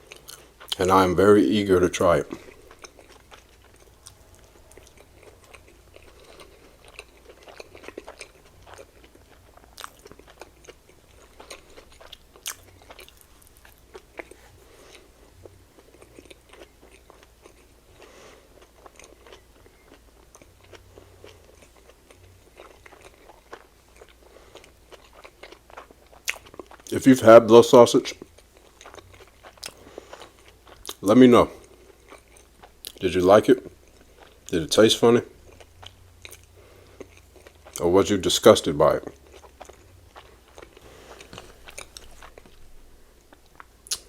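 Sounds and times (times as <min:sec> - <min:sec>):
chewing and biting food: 0:01.9 - 0:27.0, 0:28.1 - 0:34.6, 0:35.4 - 0:44.0
wet mouth clicks and smacks: 0:43.4 - 0:44.0.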